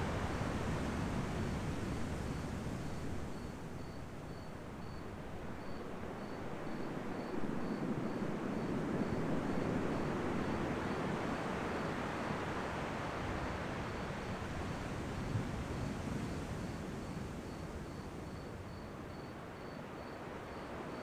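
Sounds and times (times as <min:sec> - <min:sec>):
ocean surf washing ashore: 0:00.0 - 0:04.2, 0:06.5 - 0:19.0.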